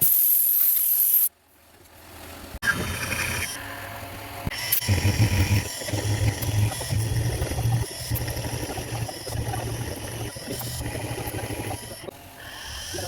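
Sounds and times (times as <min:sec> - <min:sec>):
milling machine running: 0:04.4 - 0:13.0.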